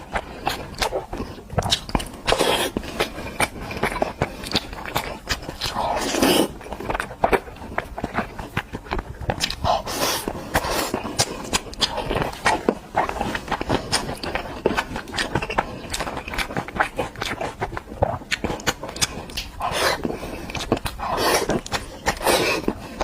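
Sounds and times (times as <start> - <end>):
chewing and mouth noises: 0.0 - 23.0.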